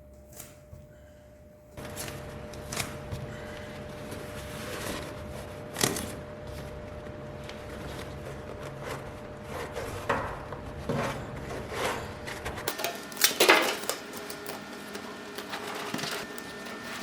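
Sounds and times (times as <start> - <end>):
faint steady hum: 0.0 - 17.0
tools and materials clattering: 7.6 - 17.0.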